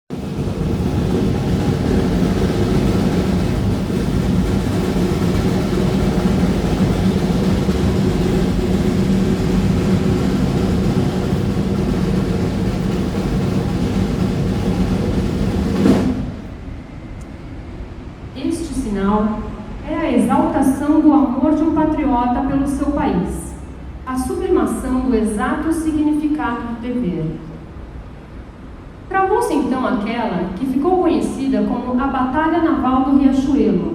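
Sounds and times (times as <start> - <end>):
heavy engine humming: 0.1 - 18.2.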